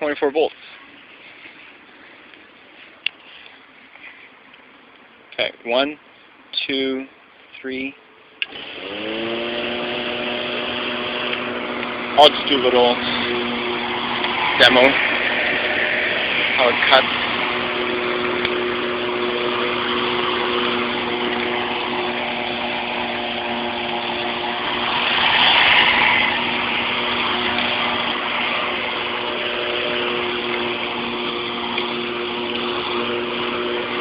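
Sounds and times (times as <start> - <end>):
electric lawnmower humming: 8.4 - 34.0.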